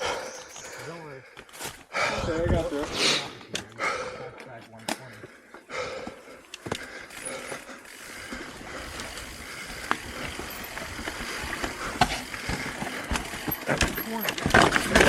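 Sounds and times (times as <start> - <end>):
bike tyres rolling and rattling: 4.8 - 15.0
wheels knocking on rocks: 8.2 - 15.0.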